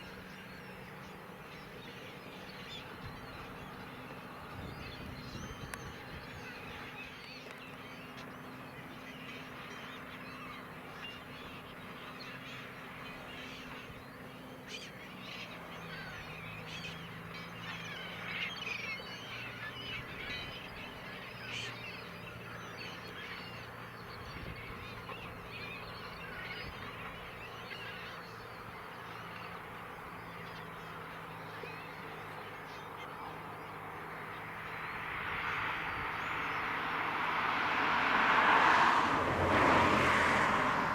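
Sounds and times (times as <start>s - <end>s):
gulls calling: 0.0s - 40.9s
broad rushing engine noise: 21.0s - 40.9s.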